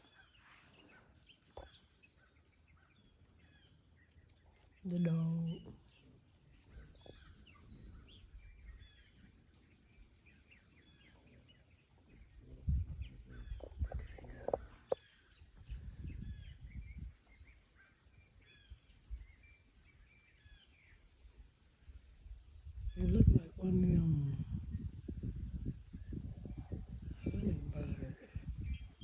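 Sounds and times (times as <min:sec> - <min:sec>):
wild birds chirping and singing: 0:00.0 - 0:29.0
low rumbling microphone noise: 0:10.8 - 0:17.5, 0:21.9 - 0:29.0.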